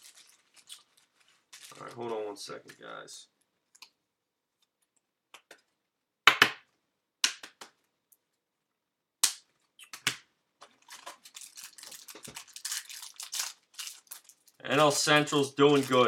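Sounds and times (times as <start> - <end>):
packaging crinkling: 0.0 - 2.9, 10.6 - 16.0.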